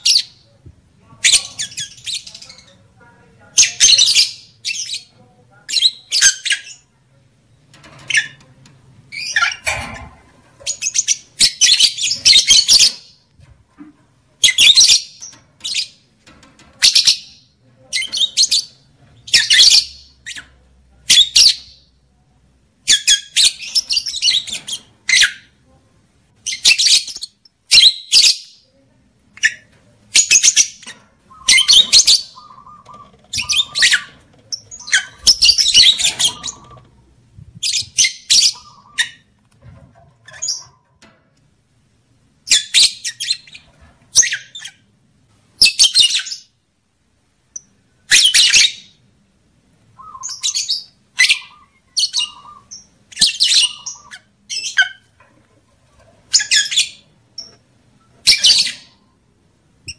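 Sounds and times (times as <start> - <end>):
lovebirds squawking: 29.4 - 37.0, 37.7 - 39.3.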